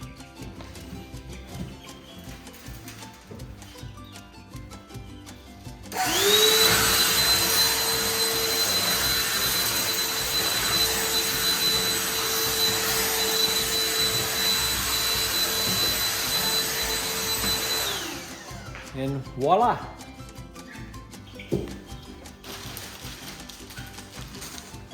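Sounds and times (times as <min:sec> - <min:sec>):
vacuum cleaner motor whining: 0:05.9 - 0:18.9.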